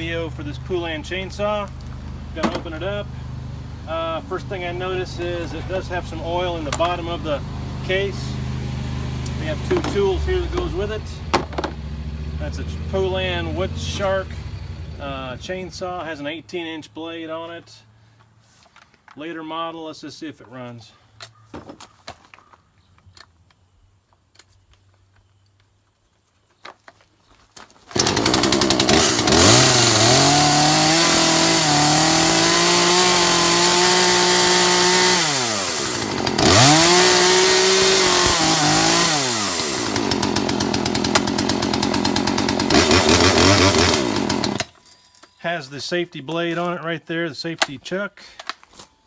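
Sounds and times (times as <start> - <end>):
chainsaw revving and idling: 0.0 - 16.1, 27.9 - 44.8.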